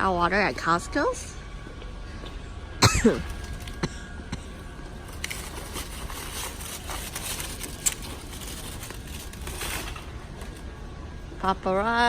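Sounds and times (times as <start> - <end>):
steady hum: 0.0 - 12.0
clicks rattles and rustles: 5.0 - 10.6.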